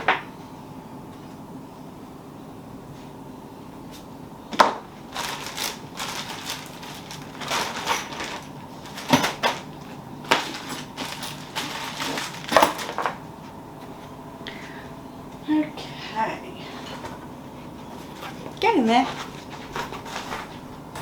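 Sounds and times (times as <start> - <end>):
objects clattering and rustling: 4.5 - 14.1, 16.7 - 21.0.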